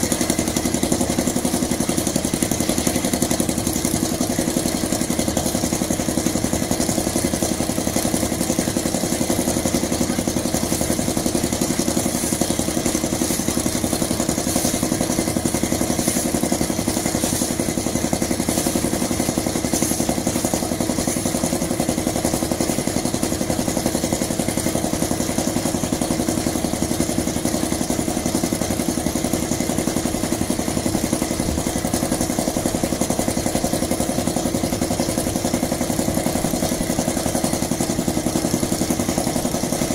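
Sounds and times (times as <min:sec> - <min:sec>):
concrete mixer engine running: 0:00.0 - 0:39.9.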